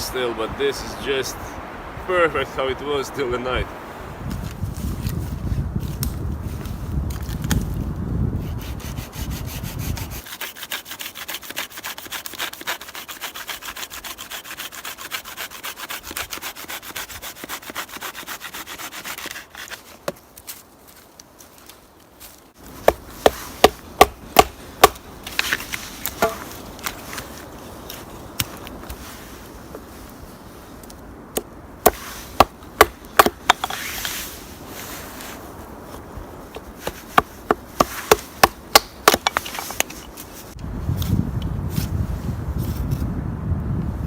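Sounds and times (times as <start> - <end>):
rasping strokes on wood: 8.4 - 19.8
wood chopping knocks: 26.2 - 26.5, 31.9 - 33.7.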